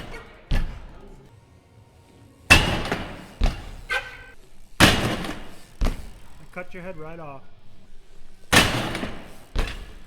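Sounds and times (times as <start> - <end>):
heavy bike impact thuds: 0.0 - 1.1, 2.4 - 6.8, 7.6 - 10.0.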